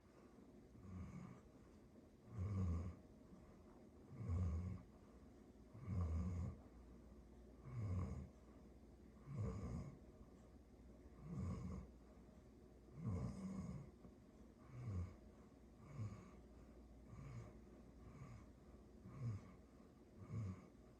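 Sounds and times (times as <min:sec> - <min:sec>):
dog snoring: 0:00.8 - 0:01.5, 0:02.2 - 0:03.0, 0:04.1 - 0:04.9, 0:05.7 - 0:06.6, 0:07.6 - 0:08.4, 0:09.2 - 0:10.0, 0:11.2 - 0:11.9, 0:12.9 - 0:13.9, 0:14.6 - 0:15.2, 0:15.8 - 0:16.4, 0:17.0 - 0:19.6, 0:20.2 - 0:20.8.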